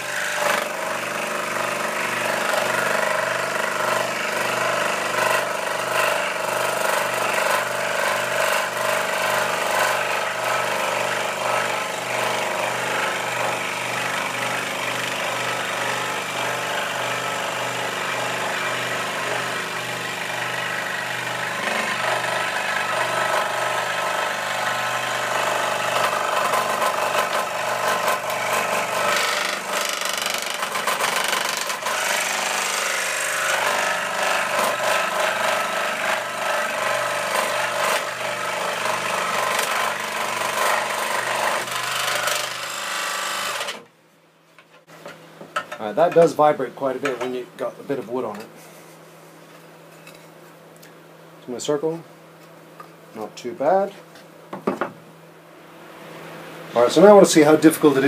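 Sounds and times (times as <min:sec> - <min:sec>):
scroll saw cutting wood: 0:00.0 - 0:43.9.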